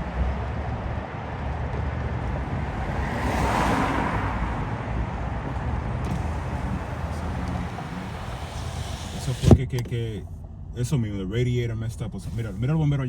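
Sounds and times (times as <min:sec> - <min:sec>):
road traffic engine hum: 0:00.0 - 0:13.0
vehicle passing: 0:00.8 - 0:09.5.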